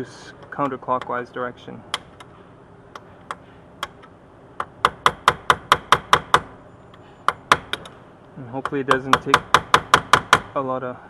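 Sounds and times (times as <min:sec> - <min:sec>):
chisel striking metal: 0:03.0 - 0:06.5, 0:07.2 - 0:08.0, 0:08.6 - 0:10.6.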